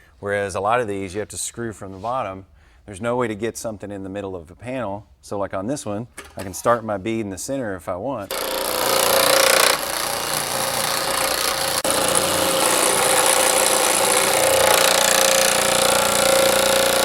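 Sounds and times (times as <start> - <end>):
power hammer on sheet metal: 8.3 - 17.0.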